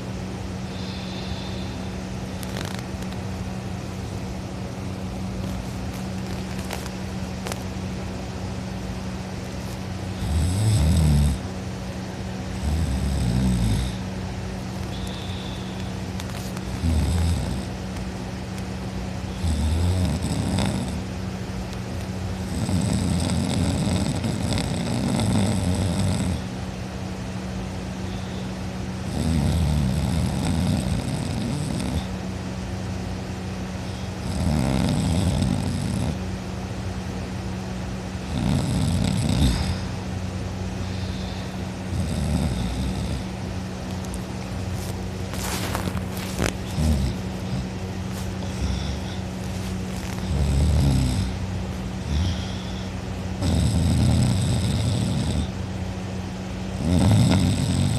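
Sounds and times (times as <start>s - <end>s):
person snoring: 0.7s - 2.8s, 10.2s - 11.4s, 12.6s - 14.0s, 14.9s - 15.9s, 16.7s - 17.7s, 19.3s - 21.0s, 22.4s - 26.4s, 29.0s - 32.1s, 33.9s - 36.2s, 38.2s - 39.9s, 40.8s - 43.3s, 45.3s - 51.4s, 52.0s - 55.6s, 56.8s - 57.9s.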